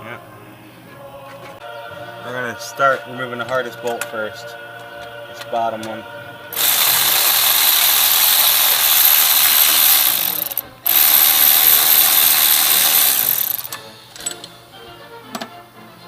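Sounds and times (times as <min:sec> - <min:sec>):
ratchet wrench clicking: 0:06.6 - 0:14.5.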